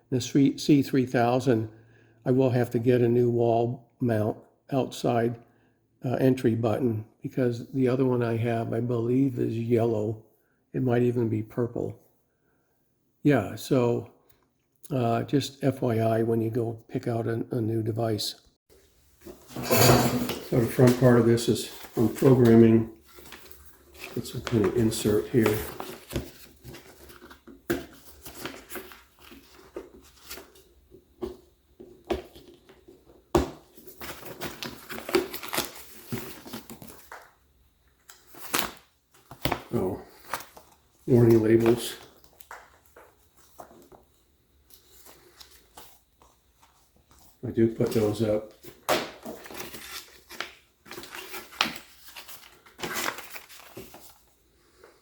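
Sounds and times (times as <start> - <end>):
packaging rustling and crinkling: 20.4 - 37.4, 38.0 - 54.4.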